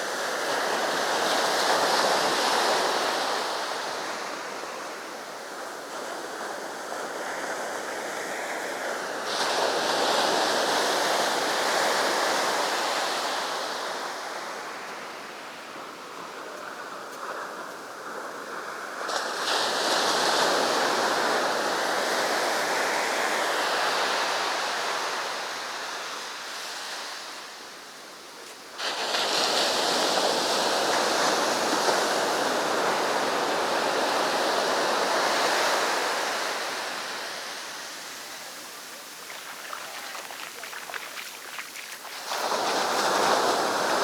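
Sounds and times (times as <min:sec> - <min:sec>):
surf breaking on beach: 0:32.5 - 0:44.0.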